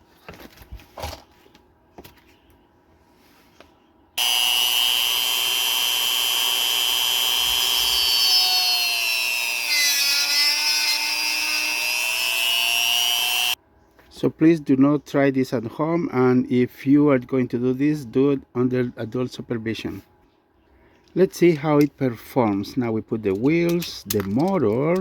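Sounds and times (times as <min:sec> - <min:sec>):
rotary tool whining: 0:04.2 - 0:13.6.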